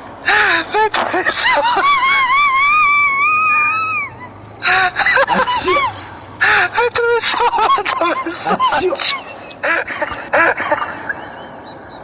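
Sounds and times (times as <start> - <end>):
person screaming cry: 0.3 - 9.3.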